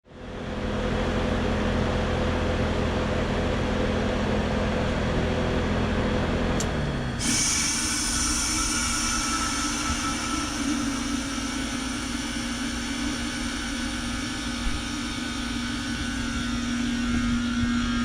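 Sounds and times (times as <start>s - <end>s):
heat pump compressor and fan hum: 0.1s - 18.0s
loud refrigerant hiss: 7.2s - 18.0s.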